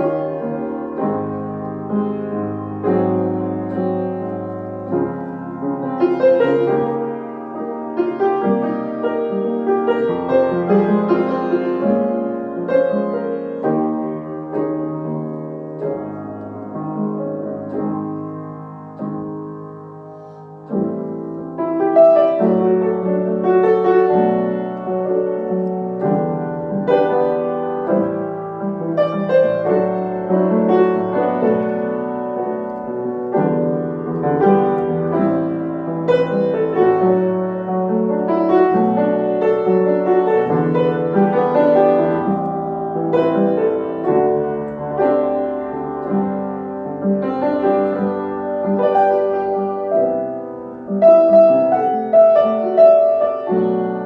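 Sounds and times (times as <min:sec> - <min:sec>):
gentle solo piano: 0:00.0 - 0:54.0.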